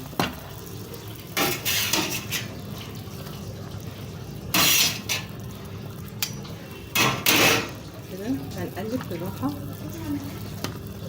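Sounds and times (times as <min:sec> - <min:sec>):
metal spoon scraping a pot: 0:01.4 - 0:02.5, 0:04.5 - 0:05.3.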